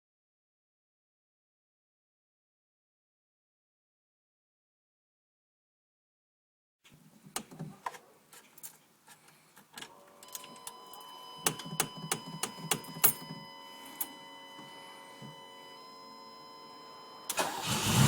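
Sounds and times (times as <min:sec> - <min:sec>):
car keys jangling: 0:07.9 - 0:08.8, 0:10.3 - 0:14.2.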